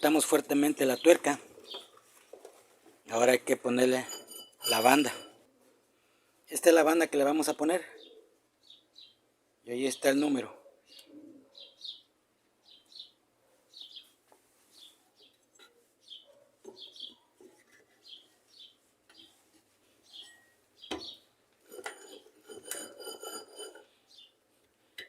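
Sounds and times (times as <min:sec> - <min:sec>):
bird chirping: 0:00.0 - 0:02.0, 0:07.9 - 0:09.3, 0:10.0 - 0:21.4, 0:23.6 - 0:24.4.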